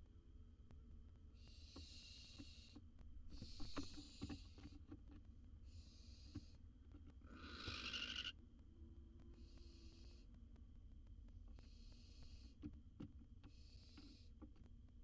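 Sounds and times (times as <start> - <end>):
barn owl hissing call: 7.3 - 8.4.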